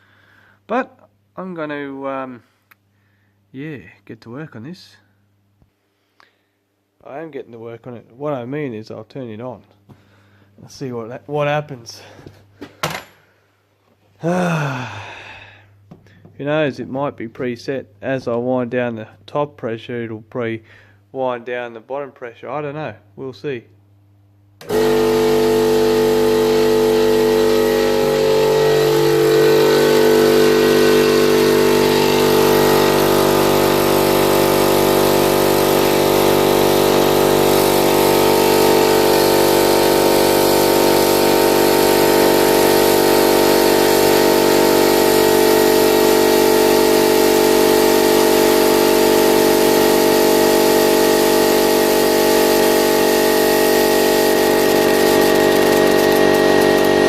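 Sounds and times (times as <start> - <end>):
piston air compressor running: 24.6 - 57.0.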